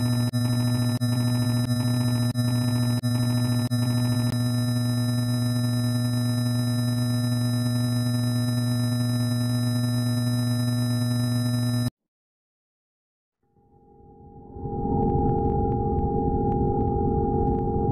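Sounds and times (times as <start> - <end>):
loud layered electronic tone: 0.0 - 11.9.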